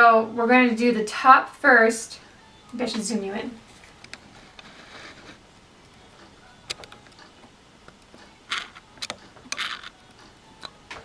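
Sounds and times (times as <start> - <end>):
scraping rustles: 3.6 - 5.4
objects clicking: 8.5 - 10.0.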